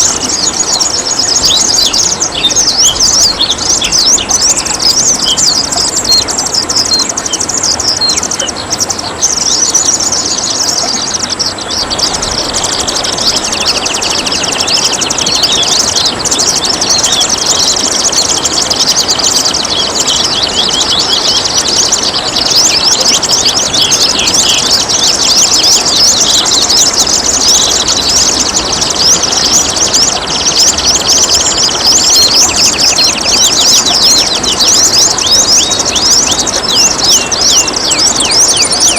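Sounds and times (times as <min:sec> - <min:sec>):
songbirds singing and chirping: 0:00.0 - 0:38.9
water trickling: 0:00.0 - 0:38.9.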